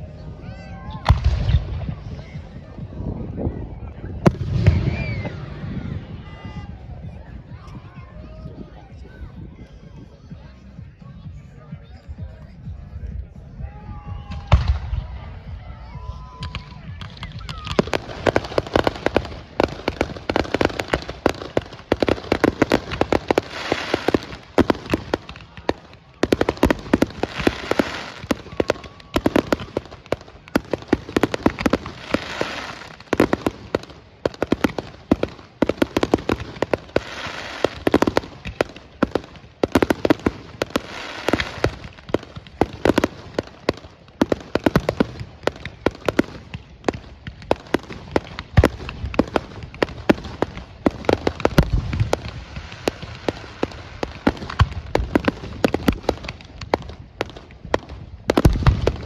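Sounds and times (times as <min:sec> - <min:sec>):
fireworks crackling: 0:16.2 - 0:59.0
fireworks bangs: 0:16.4 - 0:59.0.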